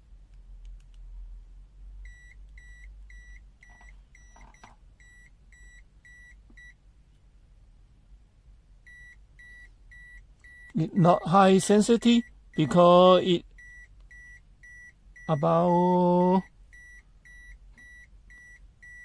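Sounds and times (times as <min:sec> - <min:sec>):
multimeter short high beeps: 0:13.6 - 0:19.0.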